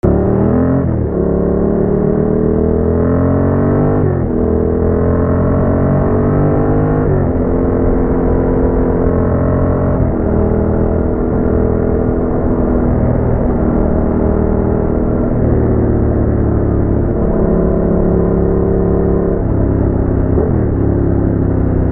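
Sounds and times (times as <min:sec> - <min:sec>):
motorcycle engine accelerating through gears: 0:00.0 - 0:21.9.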